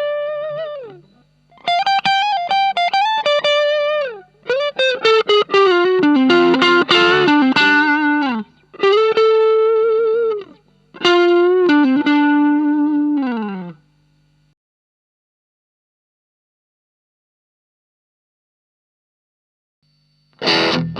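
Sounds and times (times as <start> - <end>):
distorted electric guitar: 0.0 - 14.5, 19.9 - 20.9
low amp hum: 0.0 - 14.6, 19.9 - 20.9.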